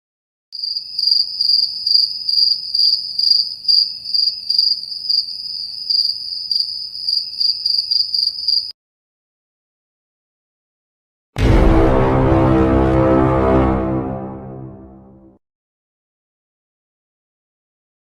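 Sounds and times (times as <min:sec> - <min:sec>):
cricket chirping: 0:00.6 - 0:08.7.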